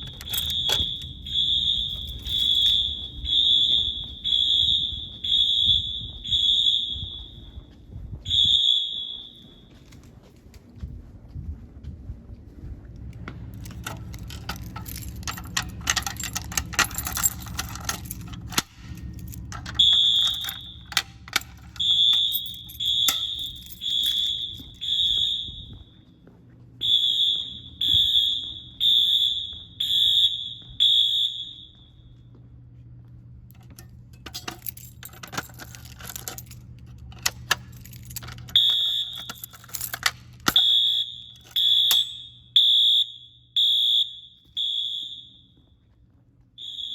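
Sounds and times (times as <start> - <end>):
rattling and clicking hardware: 0.0 - 3.6, 13.2 - 25.4, 33.5 - 42.4
fire alarm horn beeps: 0.0 - 10.0, 13.6 - 26.1, 26.8 - 32.4, 37.0 - 45.9, 46.6 - 46.9.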